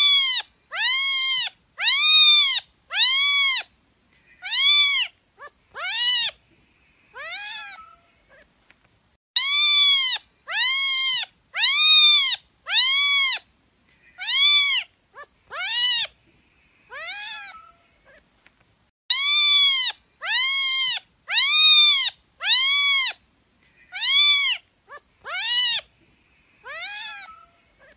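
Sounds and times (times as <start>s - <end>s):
cat meowing: 0.0s - 3.6s, 4.4s - 6.4s, 7.2s - 8.5s, 9.4s - 13.4s, 14.2s - 16.2s, 16.9s - 18.2s, 19.1s - 23.2s, 23.9s - 25.9s, 26.6s - 27.9s.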